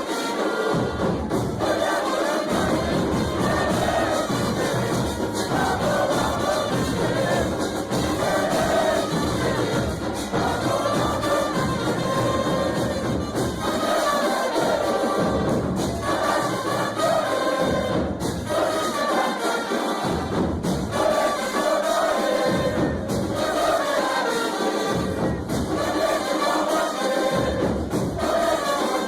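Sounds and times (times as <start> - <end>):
crowd singing a chant: 0.0 - 29.0
low drum beats: 0.8 - 18.8, 22.4 - 23.8, 24.9 - 26.2.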